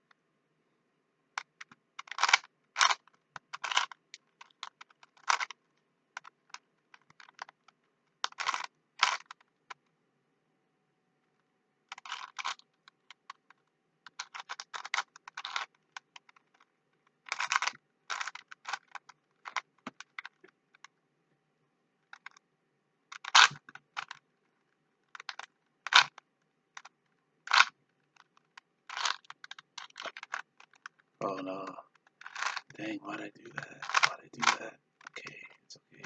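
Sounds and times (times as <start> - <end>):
plastic cube clacks: 1.3 - 9.9, 11.8 - 21.0, 22.0 - 22.4, 23.1 - 36.0
rubik's cube clicking turns: 1.4 - 9.8, 11.9 - 20.9, 22.0 - 22.4, 23.1 - 31.1, 31.9 - 32.8, 33.5 - 35.3.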